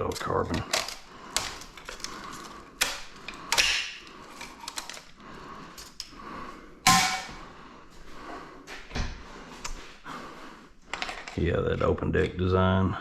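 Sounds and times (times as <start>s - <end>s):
metal tools clicking and clanking: 0.0s - 5.1s.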